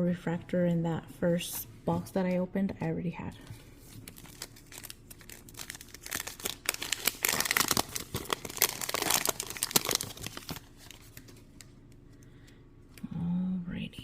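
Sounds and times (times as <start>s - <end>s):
wrapper crinkling and tearing: 3.9s - 11.7s.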